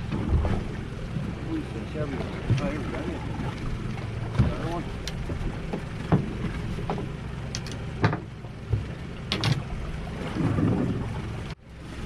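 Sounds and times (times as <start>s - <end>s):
boat engine rumble: 0.0s - 12.0s.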